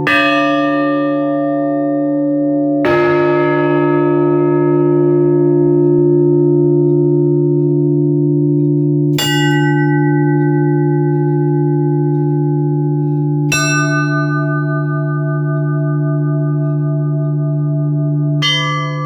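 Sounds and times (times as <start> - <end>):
church bells tolling: 0.0 - 19.0.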